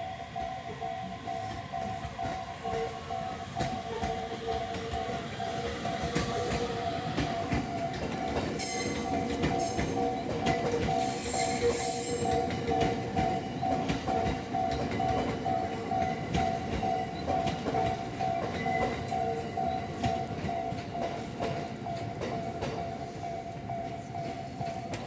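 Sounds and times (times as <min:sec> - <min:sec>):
level-crossing warning bell ringing: 0:00.0 - 0:25.0
train wheels clacking over rail joints: 0:01.4 - 0:25.0.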